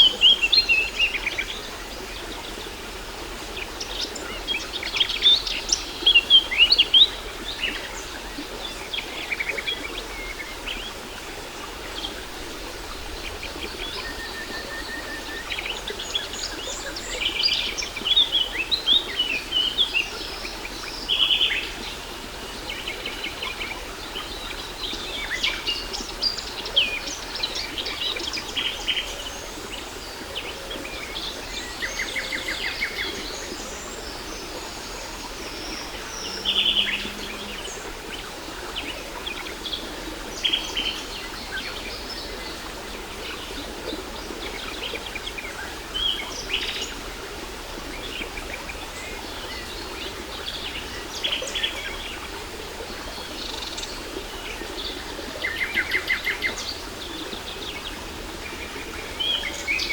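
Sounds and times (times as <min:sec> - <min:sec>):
waterfall rushing: 0:11.2 - 0:17.4.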